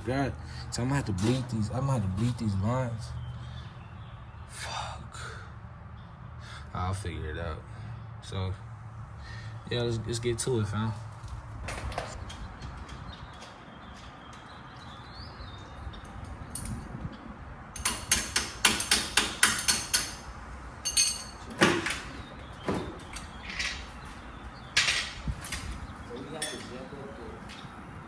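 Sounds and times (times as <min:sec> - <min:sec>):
hammer striking metal: 0:17.8 - 0:20.2.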